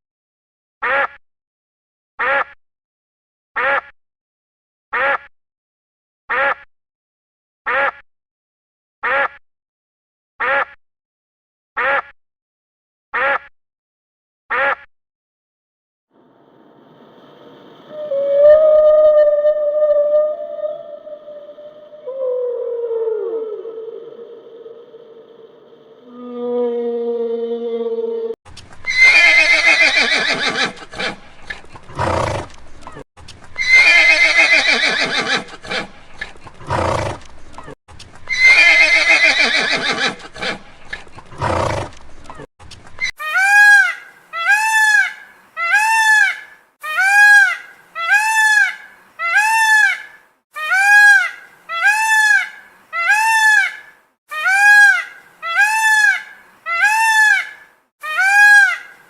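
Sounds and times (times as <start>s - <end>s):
horse whinnying: 28.9s - 31.2s, 33.6s - 35.9s, 38.3s - 40.6s.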